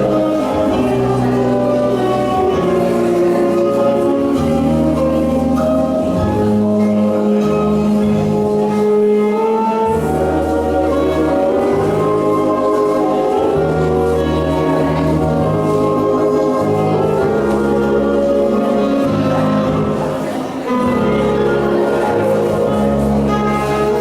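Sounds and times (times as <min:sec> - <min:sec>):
orchestral waltz music: 0:00.0 - 0:24.0.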